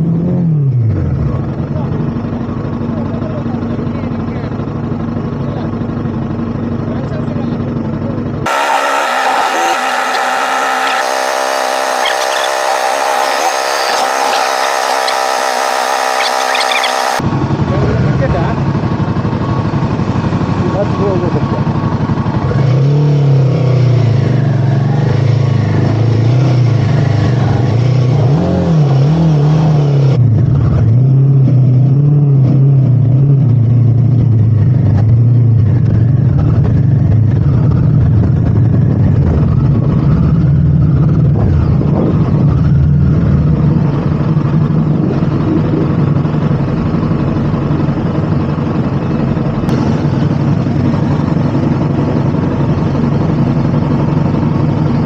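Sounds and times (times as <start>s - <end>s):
motorcycle engine revving under load: 8.4s - 38.7s.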